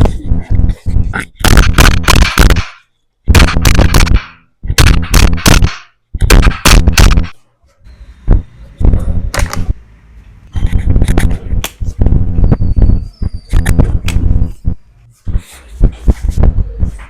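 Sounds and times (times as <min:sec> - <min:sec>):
sharp percussive knocks: 0:01.4 - 0:07.4.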